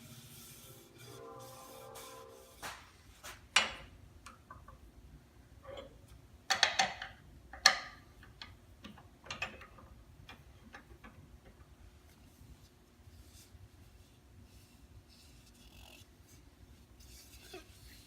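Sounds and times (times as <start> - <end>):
sharp clicks and knocks: 2.7 - 4.8, 6.5 - 11.8.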